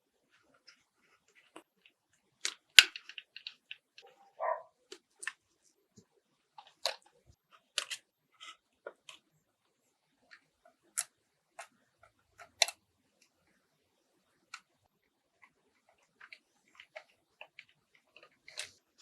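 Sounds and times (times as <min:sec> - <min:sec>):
small clicks and taps: 0:00.4 - 0:04.1.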